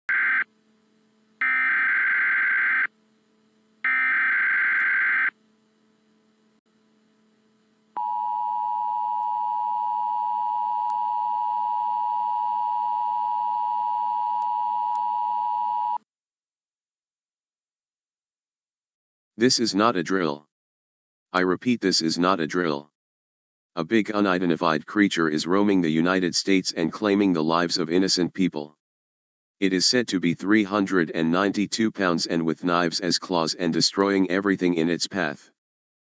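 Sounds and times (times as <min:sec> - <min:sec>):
two-tone attention signal: 0:08.0 - 0:16.0.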